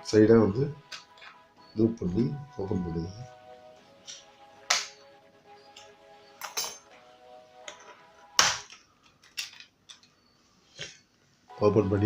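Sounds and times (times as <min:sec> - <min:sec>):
faint background music: 0:00.0 - 0:12.0.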